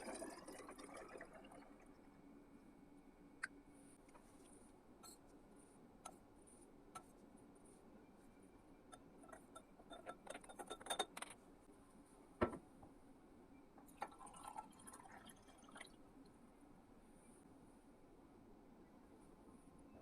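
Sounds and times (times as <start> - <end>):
glassware clinking: 9.3 - 11.3.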